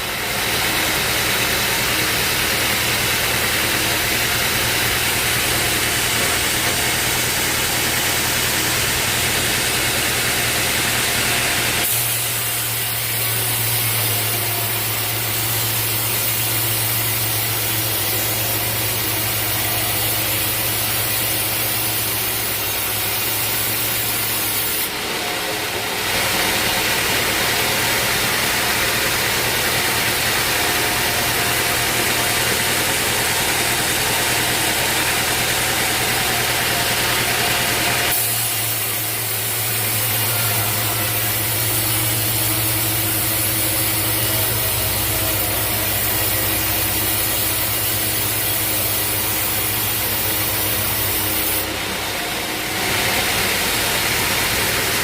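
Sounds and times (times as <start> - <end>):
saw cutting through log: 0.0 - 55.0
sawmill engine humming: 0.0 - 55.0.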